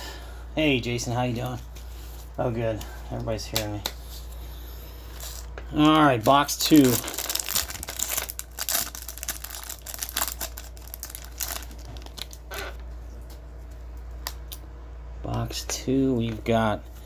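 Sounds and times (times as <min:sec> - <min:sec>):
wrappers tearing and crinkling: 0:05.1 - 0:12.8.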